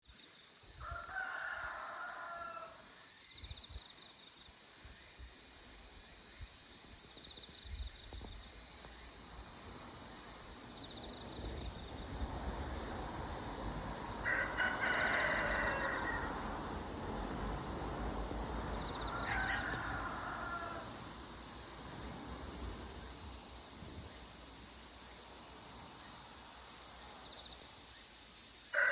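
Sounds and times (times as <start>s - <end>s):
insects chorus: 0.0s - 28.9s
rooster crowing: 0.8s - 2.9s, 14.2s - 16.8s, 18.8s - 21.2s.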